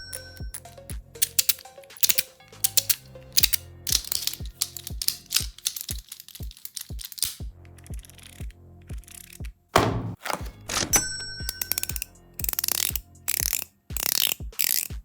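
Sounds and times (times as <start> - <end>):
fidget toys clicking and ratcheting: 0.0 - 9.5, 11.4 - 15.0
background music with steady beat: 0.0 - 15.0.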